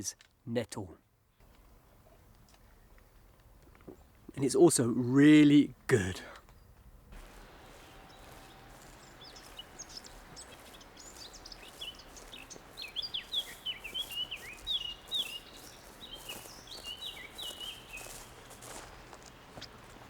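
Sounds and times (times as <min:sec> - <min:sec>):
songbird chirping: 0:03.8 - 0:20.0
faint steady hiss: 0:07.0 - 0:20.0.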